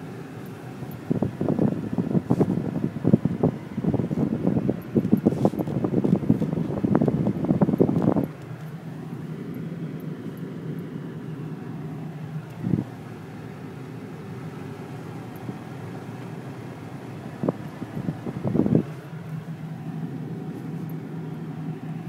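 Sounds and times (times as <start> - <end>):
car engine hum: 0.0 - 22.0
road noise: 0.0 - 22.0.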